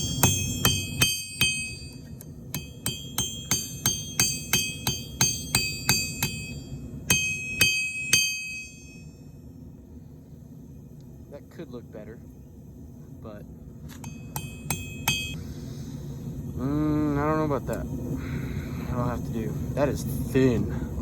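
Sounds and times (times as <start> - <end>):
hammer ringing on anvil: 0.0 - 9.2, 14.0 - 15.4.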